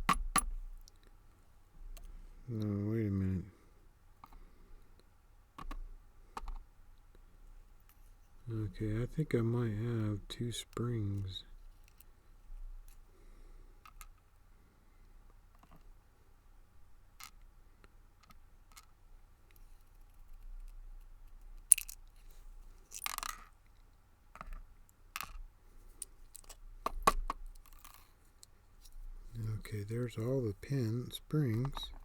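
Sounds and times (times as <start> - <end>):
small metal parts clicking: 21.6 - 22.2, 22.9 - 23.5, 26.0 - 28.5
small parts scraping: 21.6 - 23.6, 27.5 - 32.0.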